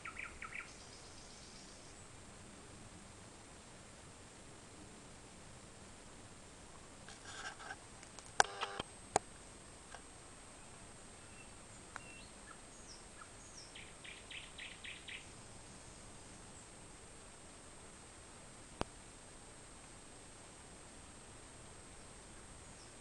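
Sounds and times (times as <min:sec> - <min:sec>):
bird singing: 0:00.0 - 0:02.0, 0:10.6 - 0:16.7
faint steady hiss: 0:00.0 - 0:23.0.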